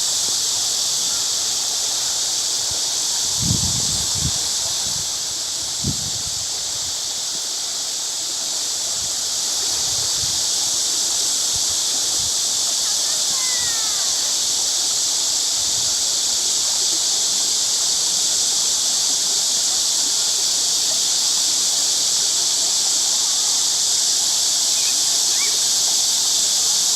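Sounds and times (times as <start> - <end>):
stream water flowing: 0.0 - 19.0.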